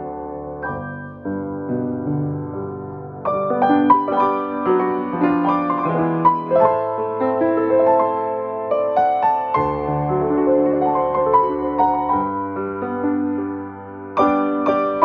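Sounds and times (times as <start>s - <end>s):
piano melody over chords: 0.0s - 15.0s.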